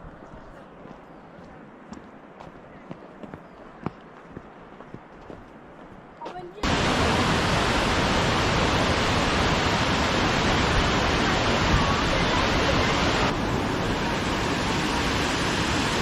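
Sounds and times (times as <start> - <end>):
waterfall rushing: 6.6 - 16.0.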